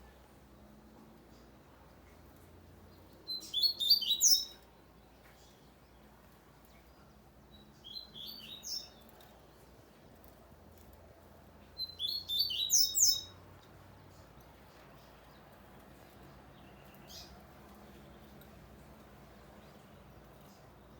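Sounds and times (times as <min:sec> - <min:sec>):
bird singing high-pitched notes: 0:03.3 - 0:04.6, 0:11.8 - 0:13.4.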